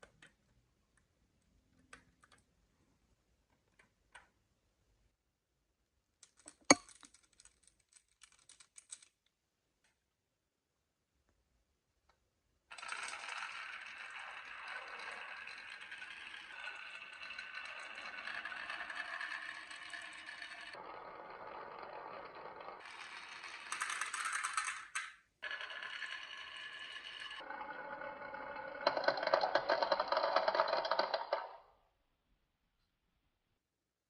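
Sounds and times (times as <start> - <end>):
marbles rattling on wooden track: 12.7 - 31.6.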